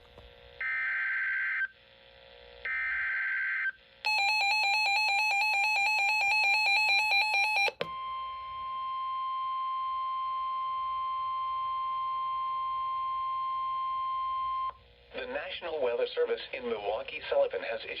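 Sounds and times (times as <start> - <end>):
warbling two-tone alarm: 4.1 - 8.4.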